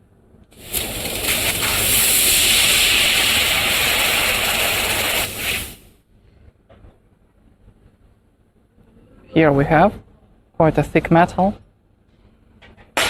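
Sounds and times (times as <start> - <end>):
hiss of gas jet: 0.5 - 5.9.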